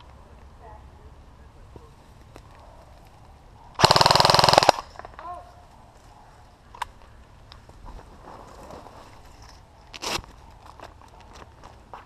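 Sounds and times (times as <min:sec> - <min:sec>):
airsoft rifle full-auto burst: 0:03.8 - 0:04.9.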